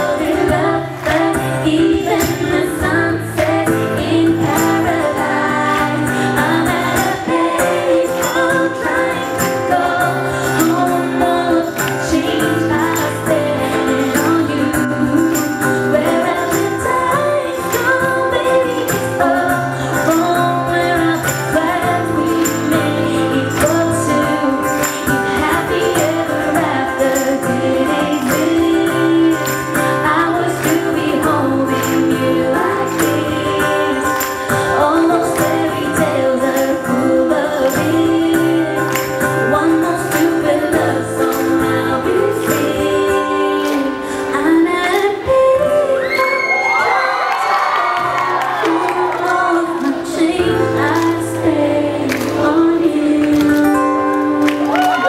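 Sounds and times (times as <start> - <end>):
tambourine jingling: 0.0 - 44.0
woman singing pop song: 0.0 - 55.0.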